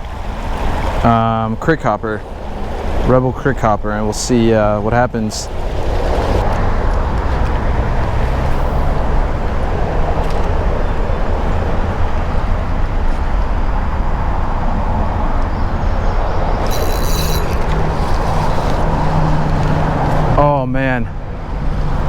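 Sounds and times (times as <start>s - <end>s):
highway traffic rumble: 0.0s - 22.0s
high rattle: 16.6s - 19.2s.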